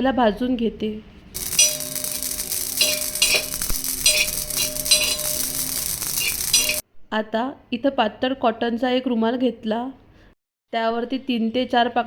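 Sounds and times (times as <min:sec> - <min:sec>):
seeds sizzling and crackling: 0:01.4 - 0:06.8
spoon scraping through seeds: 0:01.4 - 0:06.8.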